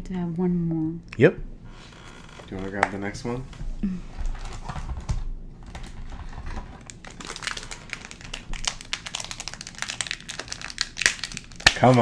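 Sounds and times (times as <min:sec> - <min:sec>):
foil wrapper crinkling: 0:04.2 - 0:12.0.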